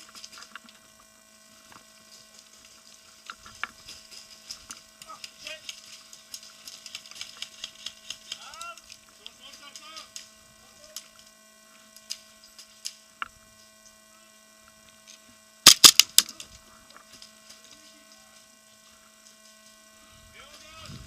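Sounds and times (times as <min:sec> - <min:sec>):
faint hum: 0:00.0 - 0:21.0
airsoft gun shots: 0:15.7 - 0:16.3.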